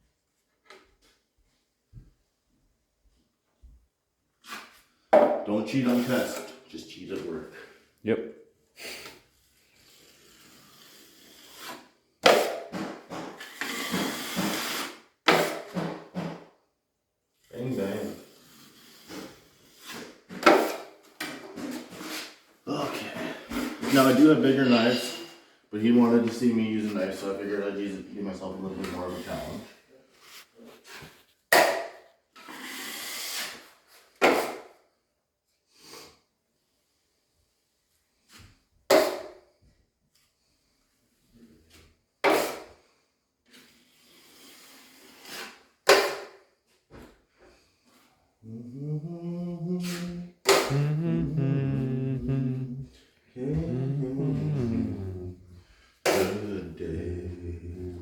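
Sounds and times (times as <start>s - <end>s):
drywall knife scraping compound: 4.4s - 5.2s, 8.8s - 16.3s, 17.5s - 22.5s, 28.6s - 34.8s, 40.1s - 48.1s.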